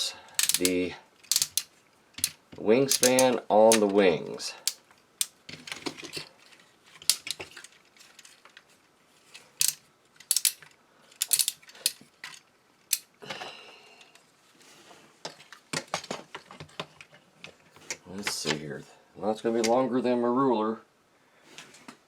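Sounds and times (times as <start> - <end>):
plastic toy joints clicking: 0.4 - 4.0, 7.0 - 7.7, 9.6 - 13.1.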